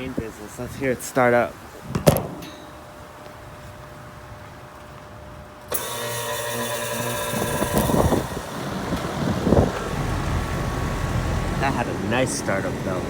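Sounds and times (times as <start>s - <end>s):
compressor starting and humming: 5.6s - 13.0s.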